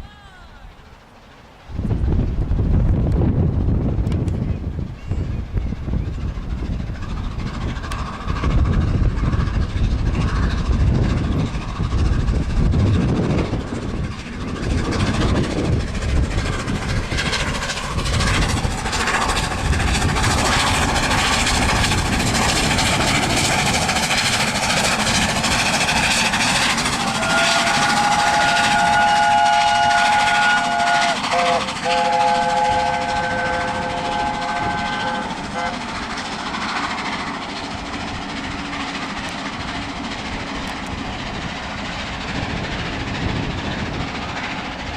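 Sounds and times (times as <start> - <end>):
steam locomotive passing: 0.0 - 44.9
steam locomotive whistle: 25.5 - 36.0.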